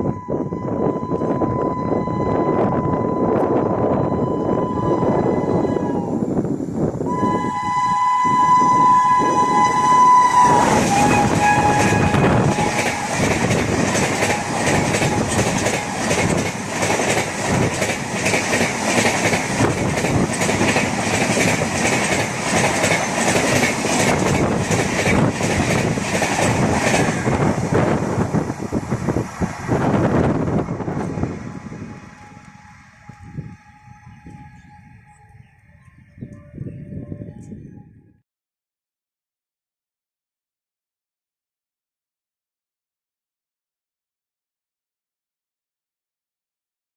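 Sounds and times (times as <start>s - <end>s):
two-tone locomotive horn: 0.0s - 6.3s, 7.1s - 16.5s, 30.0s - 37.8s
train wheels clattering over rails: 10.6s - 31.9s.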